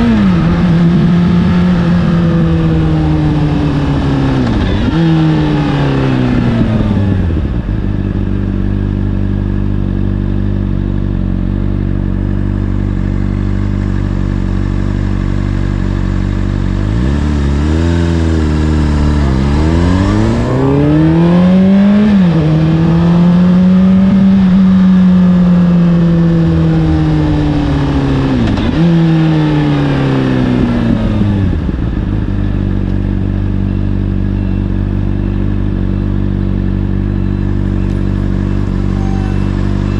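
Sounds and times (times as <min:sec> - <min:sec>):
motorcycle engine revving and idling: 0:00.0 - 0:39.9.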